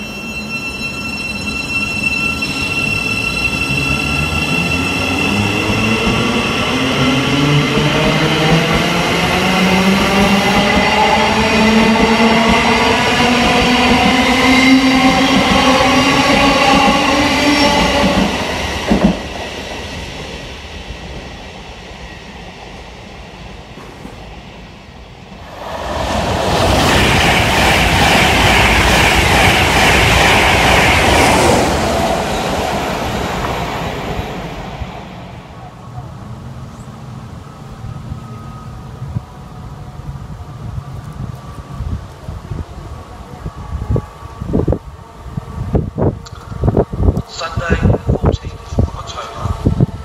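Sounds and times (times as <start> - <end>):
trains passing at speed: 0.0 - 50.0.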